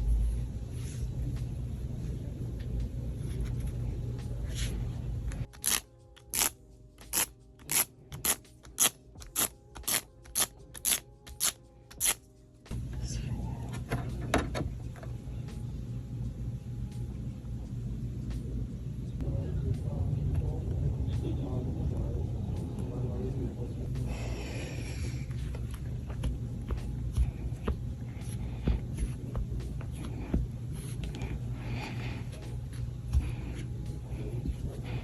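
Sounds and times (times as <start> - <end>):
low rumble: 14.7 - 35.0.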